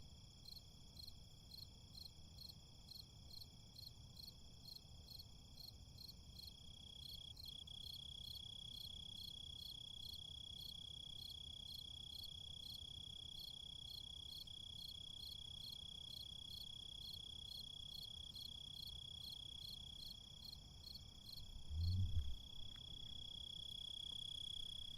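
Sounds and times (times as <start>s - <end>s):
crickets chirping: 0.0s - 24.9s
brief low rumble: 21.6s - 22.7s.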